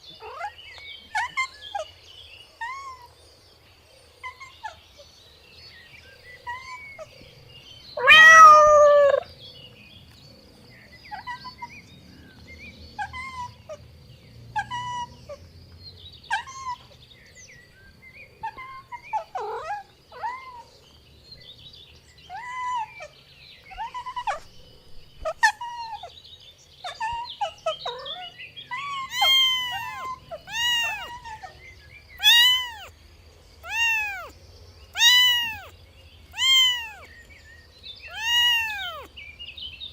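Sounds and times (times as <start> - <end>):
kittens meowing: 8.0 - 9.3, 18.4 - 20.7, 26.9 - 33.0, 33.6 - 37.1, 38.0 - 39.1.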